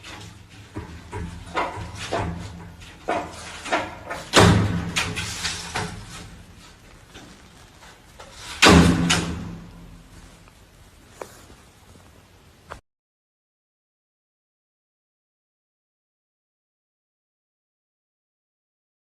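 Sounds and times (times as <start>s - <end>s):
loud bangs: 8.4s - 10.0s.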